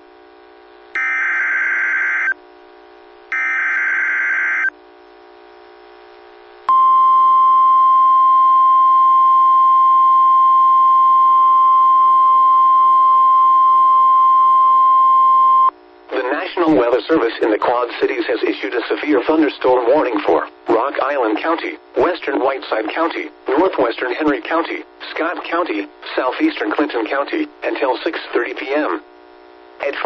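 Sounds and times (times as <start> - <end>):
steady warning alarm tone: 1.0 - 2.4, 3.3 - 4.7.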